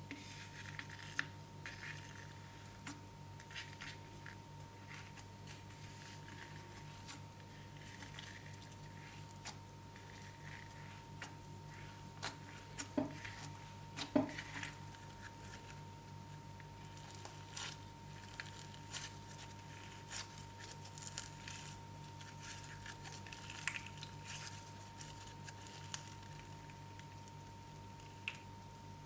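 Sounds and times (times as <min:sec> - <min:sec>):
steady low hum: 0:00.0 - 0:29.0
slime squished by hand: 0:02.8 - 0:15.8
sticky crackles and clicks: 0:16.8 - 0:28.5.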